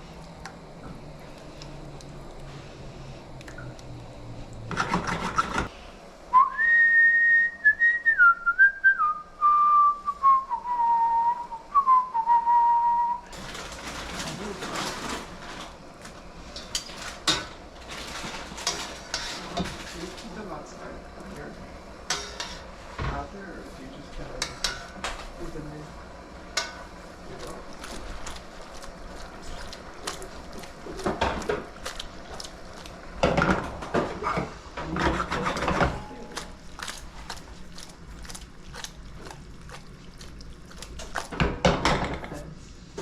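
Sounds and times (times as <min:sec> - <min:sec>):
person whistling a slow tune: 0:06.3 - 0:13.3
utensils clinking against pots: 0:13.3 - 0:15.8, 0:16.5 - 0:21.4, 0:22.0 - 0:22.7, 0:24.2 - 0:25.3, 0:26.5 - 0:28.4, 0:33.2 - 0:37.0.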